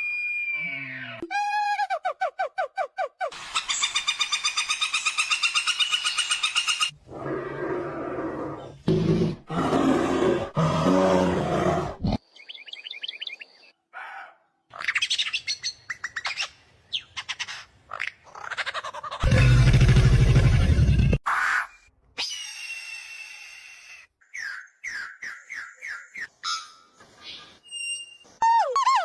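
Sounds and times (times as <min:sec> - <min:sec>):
low rough roar-like call: 0:19.2 - 0:21.2.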